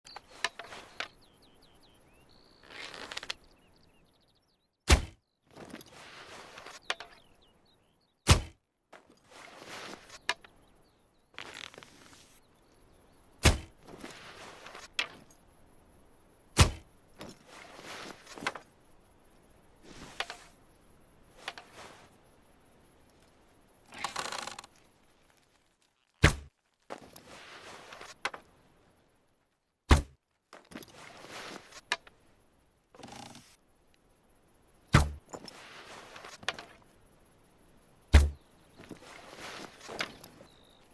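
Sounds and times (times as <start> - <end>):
arrows striking with a thunk: 4.9 - 5.2, 8.3 - 8.6, 13.4 - 13.7, 16.6 - 16.8, 26.2 - 26.5, 29.9 - 30.2, 35.0 - 35.3, 38.1 - 38.4
quiet noisy sounds: 8.9 - 40.9.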